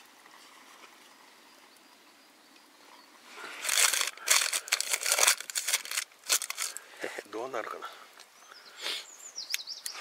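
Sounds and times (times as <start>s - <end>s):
crinkling and rustling: 3.4s - 6.8s.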